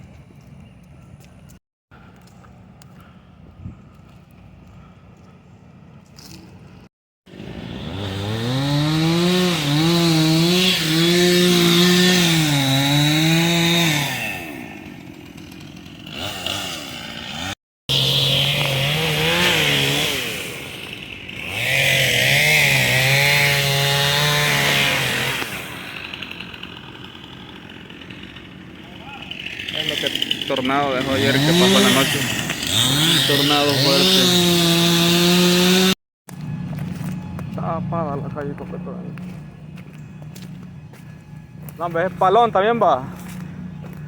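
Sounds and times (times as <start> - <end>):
chainsaw cutting wood: 7.3 - 37.2.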